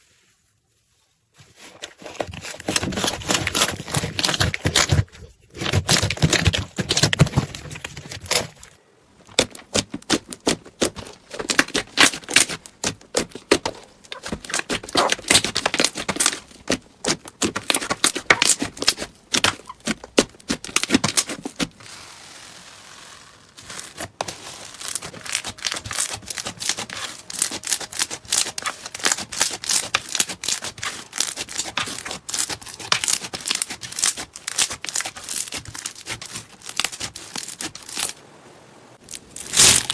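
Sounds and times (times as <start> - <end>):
slime crackling and popping: 9.4 - 38.1, 39.0 - 39.9
quiet hiss: 21.6 - 26.0, 37.4 - 39.9.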